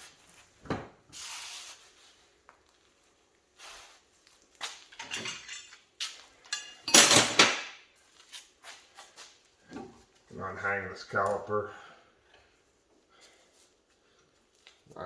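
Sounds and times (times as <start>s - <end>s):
metal hand tools clanking: 5.0s - 5.8s, 6.5s - 7.6s.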